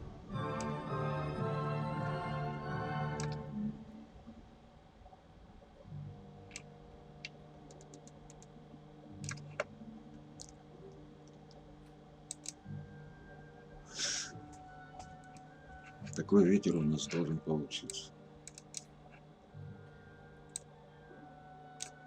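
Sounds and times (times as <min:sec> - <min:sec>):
faint low hum: 0:00.0 - 0:22.0
computer mouse clicking: 0:03.2 - 0:03.4, 0:06.5 - 0:08.5, 0:09.2 - 0:09.7, 0:10.4 - 0:10.6, 0:12.3 - 0:12.6, 0:17.9 - 0:19.2, 0:21.8 - 0:22.0.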